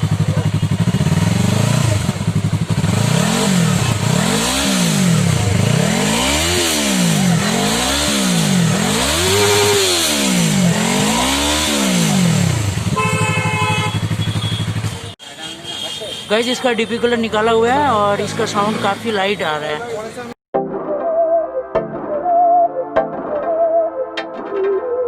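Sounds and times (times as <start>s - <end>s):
motorcycle engine revving: 0.0s - 15.2s, 16.9s - 19.9s.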